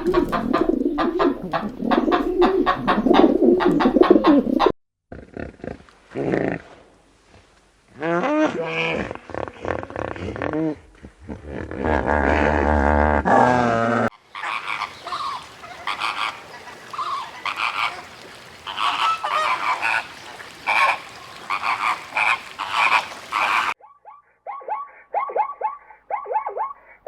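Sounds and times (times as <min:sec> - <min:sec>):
fowl honking: 0:14.2 - 0:23.8.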